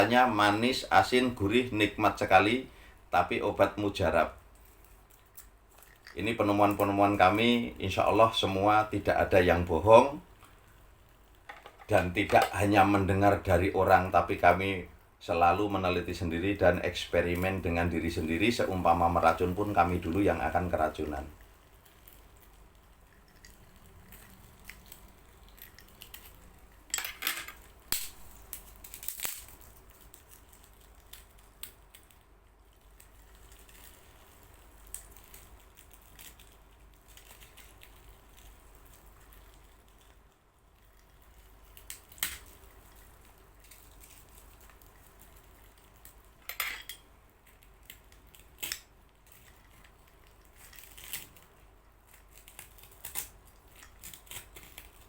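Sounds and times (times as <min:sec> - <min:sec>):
utensils and glass clinking: 0:46.5 - 0:47.0.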